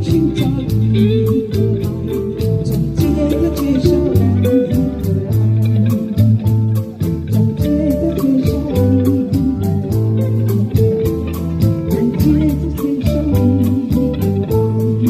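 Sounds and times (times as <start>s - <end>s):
bass guitar: 0.0s - 15.0s
guitar melody: 0.0s - 15.0s
steady drum beat: 0.0s - 15.0s.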